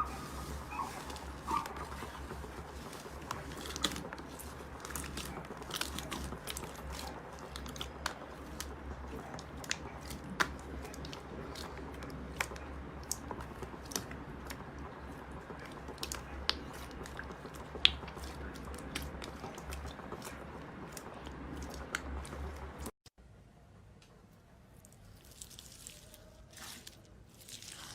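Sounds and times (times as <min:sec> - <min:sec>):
slime squelching: 0:00.0 - 0:22.9, 0:24.7 - 0:27.9
steady low hum: 0:00.0 - 0:25.0
sharp clicks and crackles: 0:00.8 - 0:22.9.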